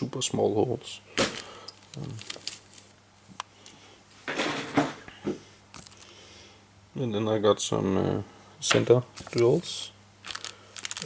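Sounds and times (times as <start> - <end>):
packaging rustle: 1.4 - 2.9, 5.8 - 6.1, 10.2 - 11.0.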